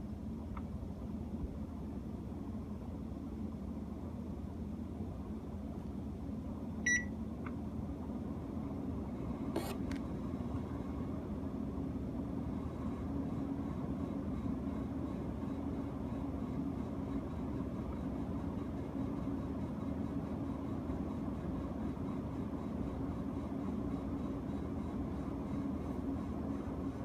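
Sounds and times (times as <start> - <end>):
air conditioner humming: 0.0 - 27.0
short electronic beep: 6.9 - 7.1.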